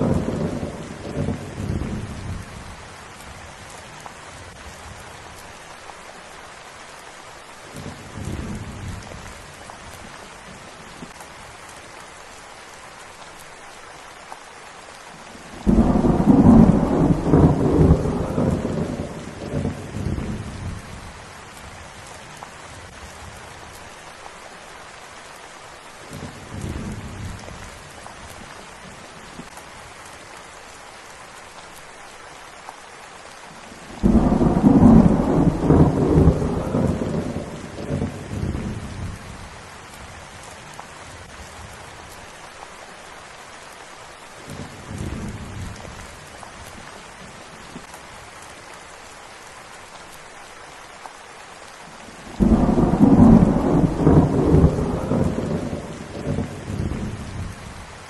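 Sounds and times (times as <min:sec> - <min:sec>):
thunder rumbling: 0:00.0 - 0:03.7, 0:15.5 - 0:21.2, 0:33.8 - 0:40.2, 0:52.2 - 0:57.8
steady rain falling: 0:00.0 - 0:58.0.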